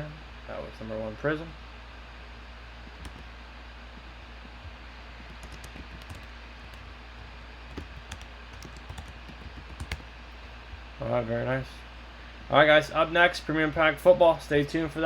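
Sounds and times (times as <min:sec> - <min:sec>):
steady low hum: 0:00.0 - 0:15.0
keyboard key clicks: 0:02.9 - 0:03.3, 0:07.7 - 0:10.1.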